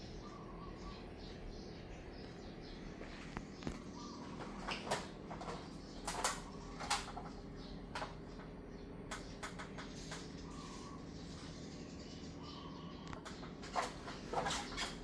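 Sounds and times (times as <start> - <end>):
ceiling fan motor humming: 0.0 - 15.0
sharp clicks and knocks: 4.4 - 10.4.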